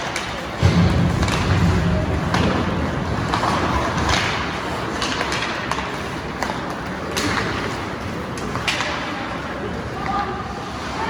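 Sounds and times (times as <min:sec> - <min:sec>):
skates sticks and puck on ice: 0:00.0 - 0:11.0.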